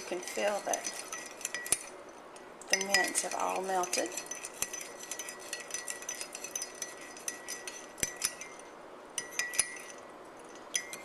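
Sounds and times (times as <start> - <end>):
spoon clinking in ceramic mug: 0.1 - 1.9, 2.7 - 8.6, 9.2 - 11.0.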